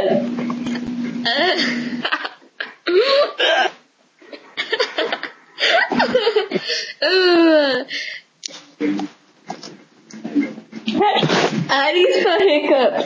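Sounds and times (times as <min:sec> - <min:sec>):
girls laughing: 0:01.2 - 0:07.8, 0:10.9 - 0:13.0.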